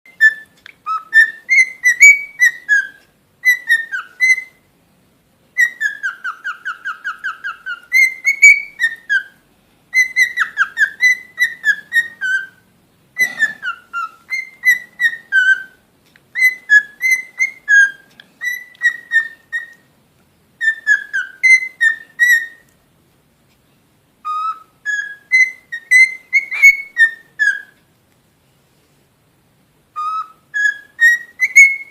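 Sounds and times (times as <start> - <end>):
cockatiel whistling: 0.1 - 4.6, 5.6 - 12.6, 13.2 - 19.9, 20.6 - 22.7, 24.2 - 27.8, 29.9 - 31.9.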